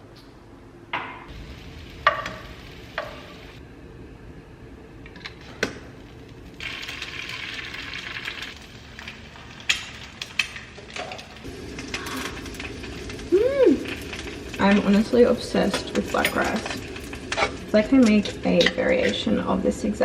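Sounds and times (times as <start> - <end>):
food sizzling in a frying pan: 1.3 - 3.6, 6.6 - 19.9.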